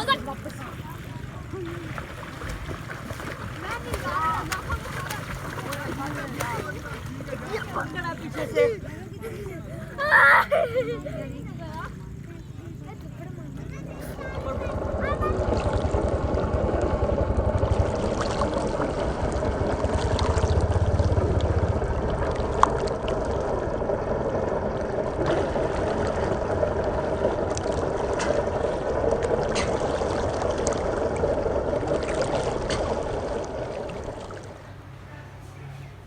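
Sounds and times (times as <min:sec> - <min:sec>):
water lapping at shore: 0:00.0 - 0:21.5, 0:22.1 - 0:36.0
small water splashes: 0:00.0 - 0:21.6, 0:22.2 - 0:36.0
low rumble: 0:14.1 - 0:36.0.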